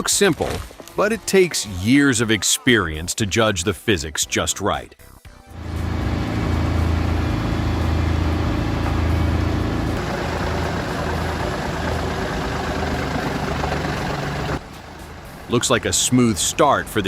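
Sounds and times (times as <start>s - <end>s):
heavy vehicle engine running: 5.6s - 17.0s.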